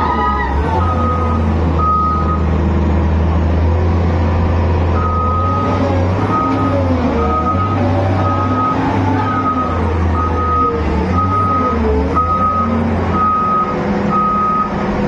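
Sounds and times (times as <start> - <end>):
diesel engine running: 0.0 - 15.0
excavator travel alarm beeping: 0.8 - 2.5, 5.0 - 14.8.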